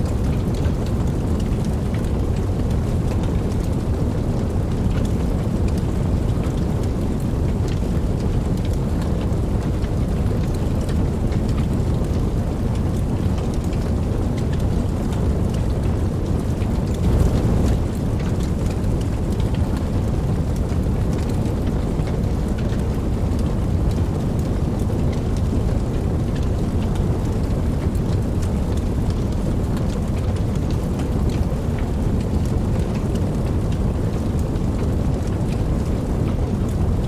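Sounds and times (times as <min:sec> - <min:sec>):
raindrops ticking: 0:00.0 - 0:37.0
steady rain falling: 0:00.0 - 0:37.0
distant thunder rumbling: 0:16.4 - 0:20.8.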